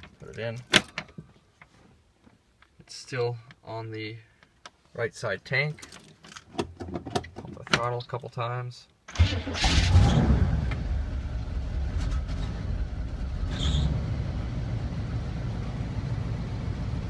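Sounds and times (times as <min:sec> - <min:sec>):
engine starting and idling: 0:09.1 - 0:13.9.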